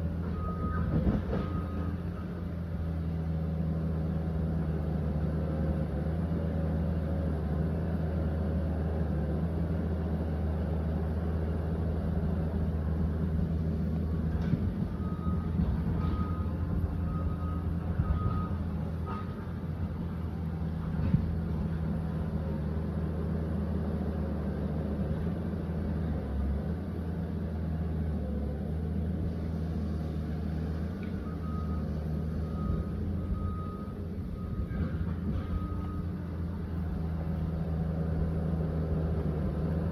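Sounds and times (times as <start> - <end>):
diesel engine running: 0.0 - 39.9
reversing alarm beeping: 0.2 - 2.3, 14.8 - 19.5, 31.1 - 36.8.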